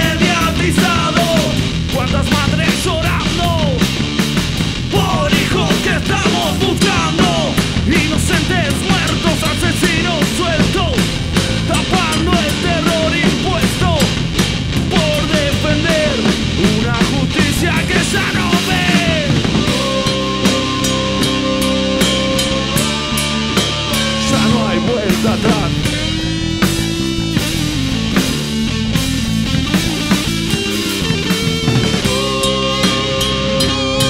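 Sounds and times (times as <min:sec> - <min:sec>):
drum kit hits: 0:00.0 - 0:34.0
held chords: 0:00.0 - 0:34.0
rock band playing live: 0:00.0 - 0:34.0
sliding bending melody: 0:06.6 - 0:14.8.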